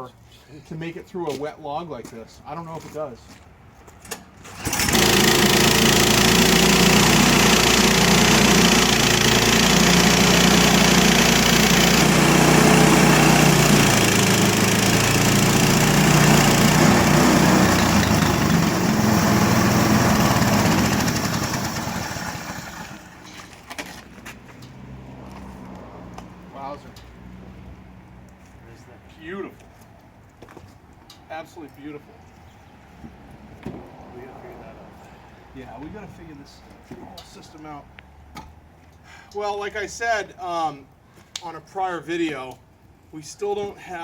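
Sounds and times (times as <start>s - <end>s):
sawmill gas engine running: 4.5s - 23.3s
band blade cutting log: 4.6s - 23.1s.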